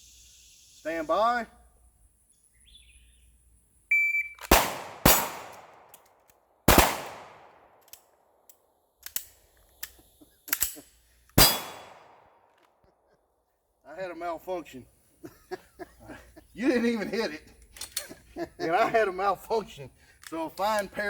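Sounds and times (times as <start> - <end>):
shot timer beep: 3.9 - 4.4
gun handling clicks and clanks: 4.2 - 12.9, 17.5 - 18.3, 20.1 - 21.0
pistol shots: 4.4 - 6.0, 6.7 - 7.9, 11.4 - 12.5.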